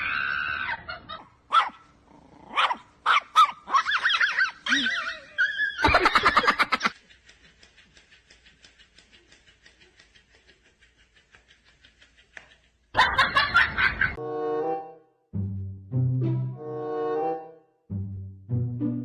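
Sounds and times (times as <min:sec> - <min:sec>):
person laughing: 0:05.8 - 0:14.2.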